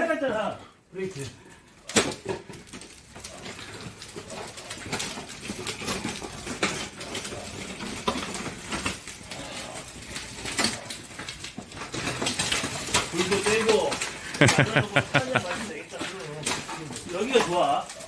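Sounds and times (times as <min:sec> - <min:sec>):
firewood logs knocking and clattering: 0:00.0 - 0:18.0.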